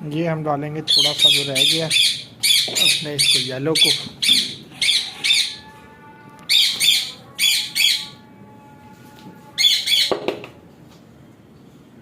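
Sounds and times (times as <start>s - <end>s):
parrots squawking: 0.9s - 5.7s, 6.5s - 8.2s, 9.6s - 10.2s.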